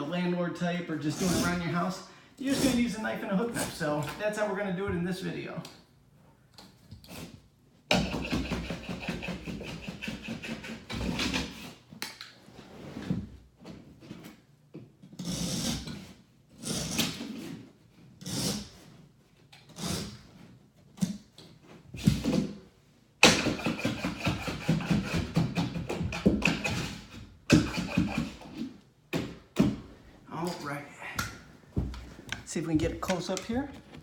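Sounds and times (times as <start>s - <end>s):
knife scraping through carpet: 15.2s - 19.0s.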